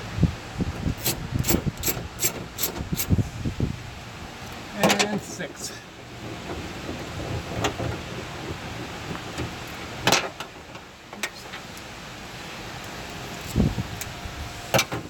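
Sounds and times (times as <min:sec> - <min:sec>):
hand tools clicking and knocking: 0:01.0 - 0:03.1.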